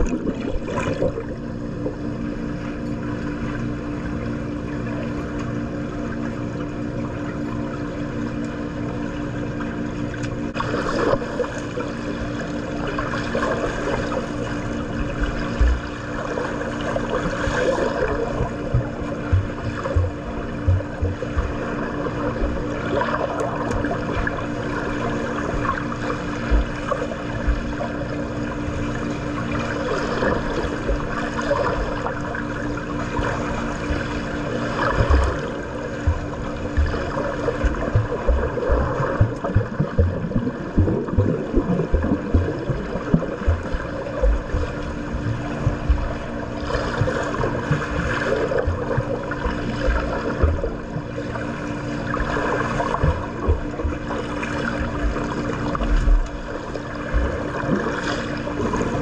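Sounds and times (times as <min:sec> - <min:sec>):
steady low hum: 0:00.0 - 0:59.0
low thumps: 0:18.4 - 0:21.7, 0:36.0 - 0:46.1
pool water splashing: 0:29.5 - 0:59.0.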